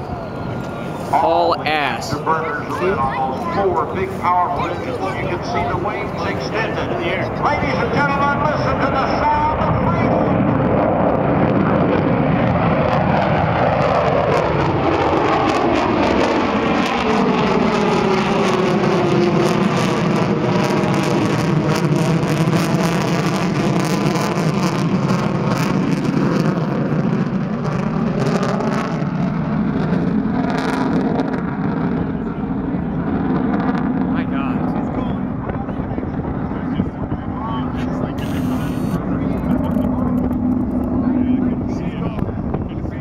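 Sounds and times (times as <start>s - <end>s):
crackling jet roar: 0.0s - 43.0s
jet bomber engines roaring: 0.0s - 43.0s.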